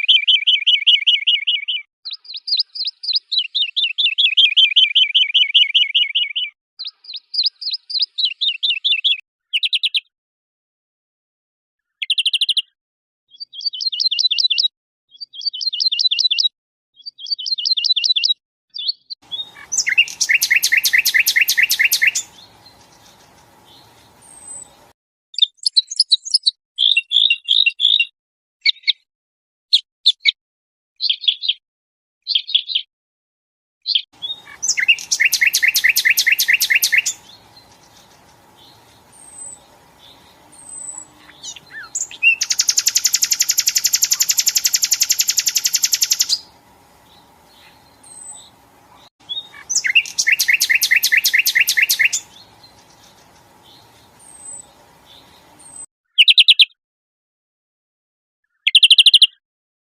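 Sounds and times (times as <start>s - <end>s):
songbird chirps and trills: 13.4s - 28.1s, 34.0s - 56.8s.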